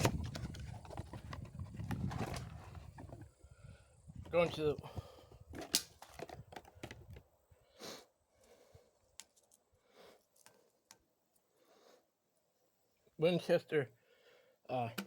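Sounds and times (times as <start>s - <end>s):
cardboard box rustling: 0.0s - 3.4s.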